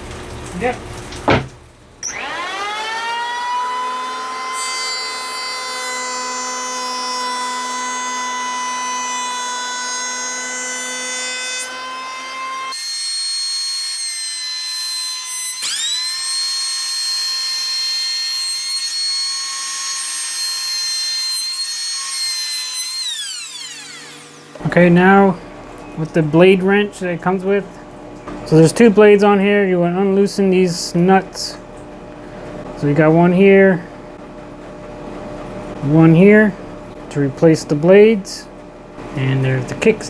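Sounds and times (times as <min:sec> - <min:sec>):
electric hand planer whining: 0:02.0 - 0:24.6.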